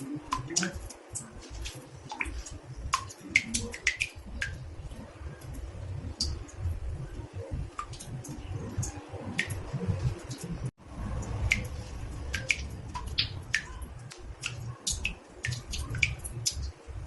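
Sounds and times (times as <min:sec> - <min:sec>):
water drops plinking in bathtub: 0:00.0 - 0:04.7, 0:11.1 - 0:16.8.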